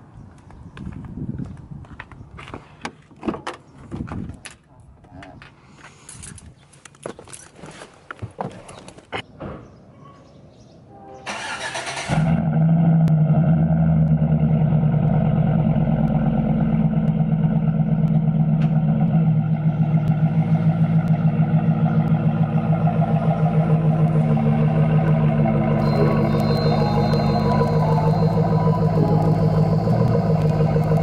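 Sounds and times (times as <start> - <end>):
truck engine starter cranking: 11.3 - 12.3
truck engine idling: 14.2 - 31.0.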